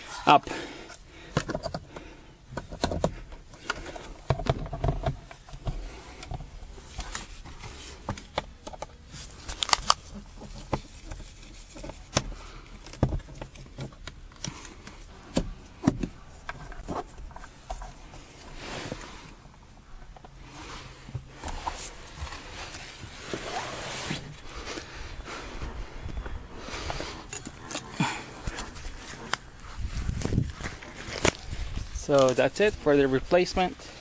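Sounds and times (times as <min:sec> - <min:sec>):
low steady hum: 0:00.0 - 0:34.0
tools clicking and knocking: 0:01.3 - 0:06.5.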